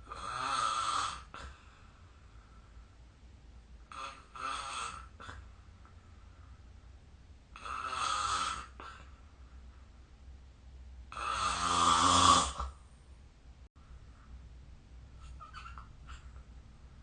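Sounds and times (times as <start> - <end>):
person snoring: 0.1 - 1.7, 7.6 - 9.1, 11.1 - 12.8.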